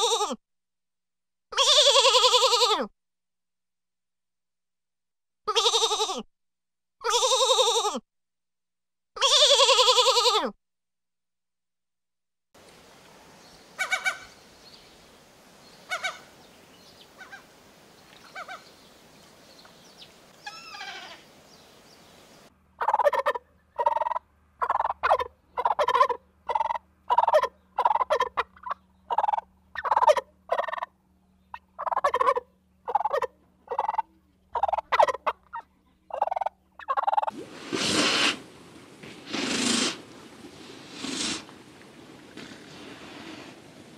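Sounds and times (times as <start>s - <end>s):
turkeys gobbling: 13.8s - 14.4s, 15.9s - 16.3s, 18.3s - 18.6s, 22.8s - 30.9s, 31.5s - 38.4s.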